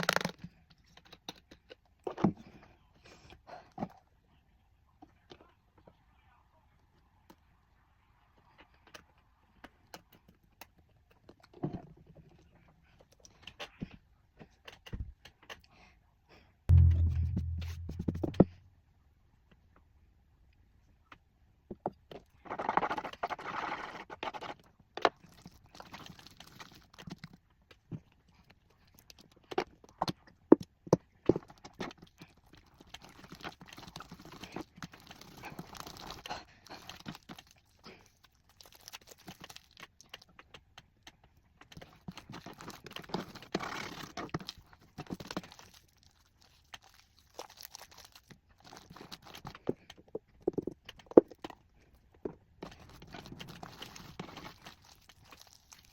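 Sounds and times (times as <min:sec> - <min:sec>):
sharp clicks and taps: 0:16.7 - 0:18.5
sticky slime stirring: 0:41.1 - 0:51.5, 0:52.6 - 0:55.9.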